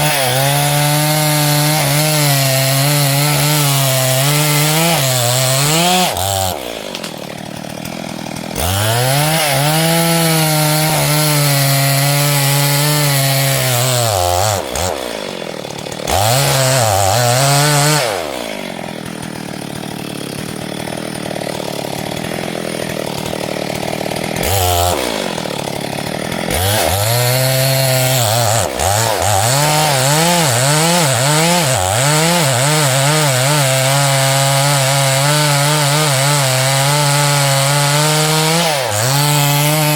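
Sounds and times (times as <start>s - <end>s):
chainsaw running at high revs: 0.0s - 39.9s.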